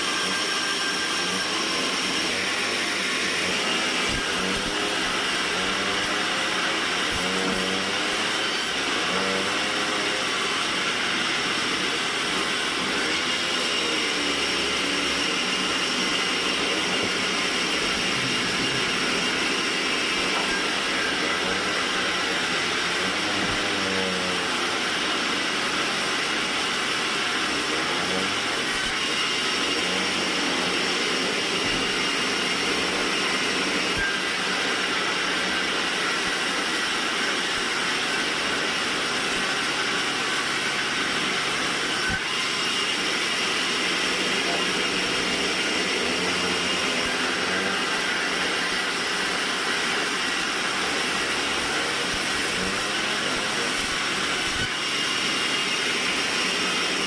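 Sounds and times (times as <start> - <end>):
band saw whining: 0.0 - 57.0.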